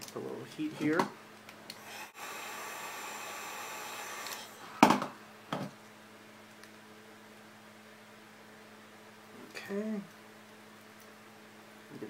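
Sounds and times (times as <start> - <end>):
hot-air blower running: 1.8 - 5.7.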